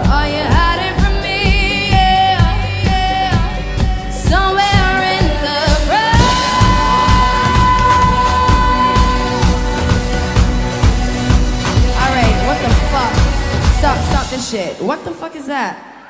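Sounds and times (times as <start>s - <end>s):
person singing: 0.0s - 10.3s
steady drum beat: 0.0s - 15.2s
pop band playing: 0.0s - 15.7s.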